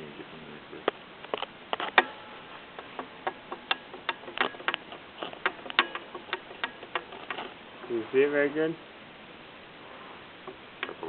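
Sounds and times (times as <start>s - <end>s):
turbocharger metallic clicks: 0.9s - 7.6s, 10.4s - 11.0s.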